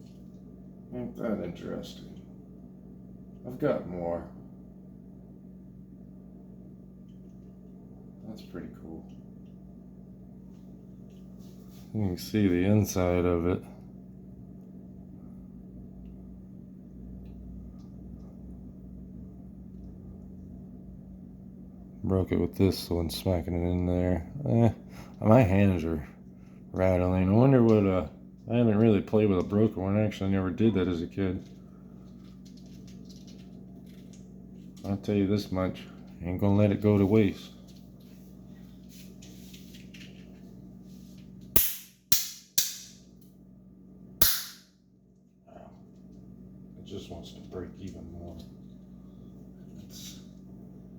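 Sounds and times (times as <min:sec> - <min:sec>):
steady low hum: 0:00.0 - 0:50.9.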